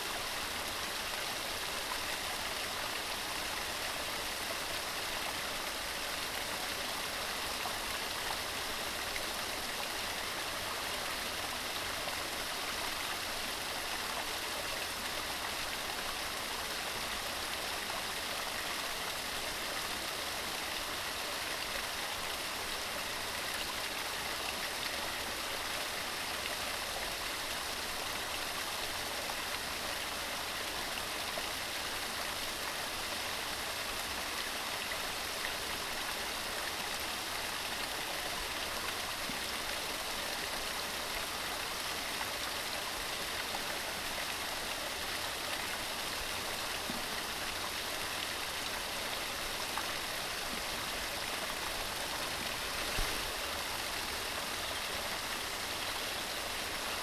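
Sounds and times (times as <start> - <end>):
stream running over rocks: 0.0 - 57.0.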